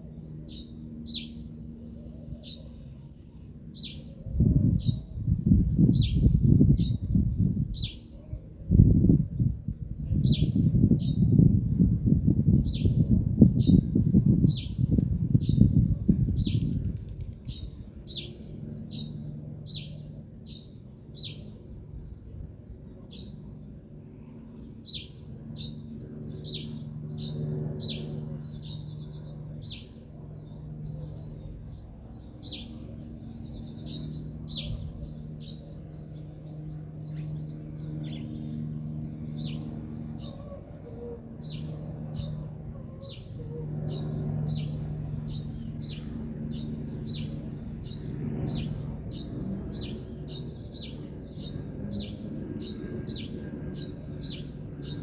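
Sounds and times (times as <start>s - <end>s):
low steady hum: 0.0s - 55.0s
buzzy trilling bird call: 24.7s - 55.0s.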